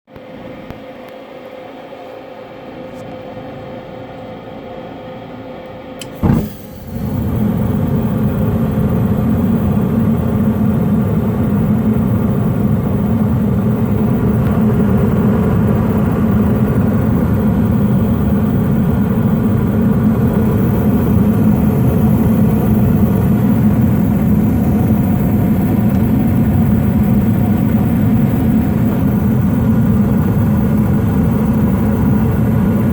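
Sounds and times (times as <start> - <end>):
furnace humming: 0.1 - 32.9
burner lighting whoosh: 6.0 - 10.5
burner flames rumbling: 6.0 - 32.9.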